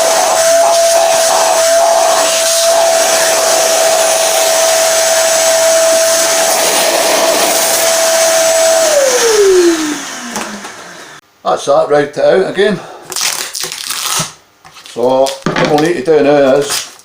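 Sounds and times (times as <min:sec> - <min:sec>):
wood router whining: 0:00.0 - 0:11.2.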